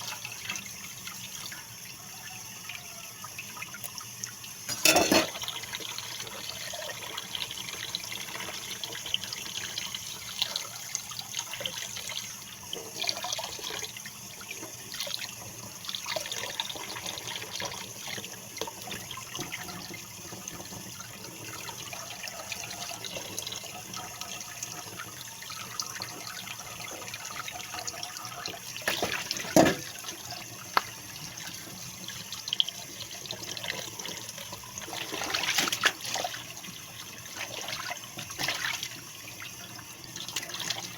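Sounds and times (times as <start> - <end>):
tap water running into sink: 0.0 - 40.9
scrapes and splashes: 35.0 - 36.4.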